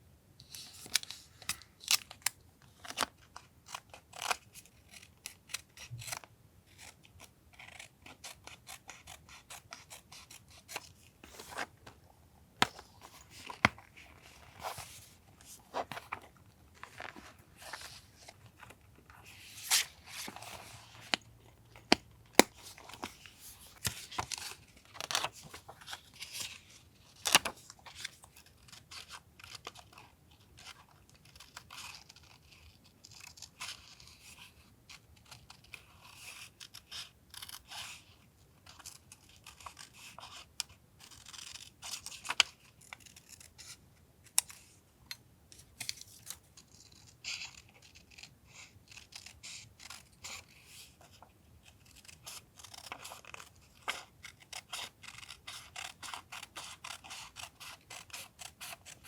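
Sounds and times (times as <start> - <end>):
paper rustling: 12.6 - 26.6.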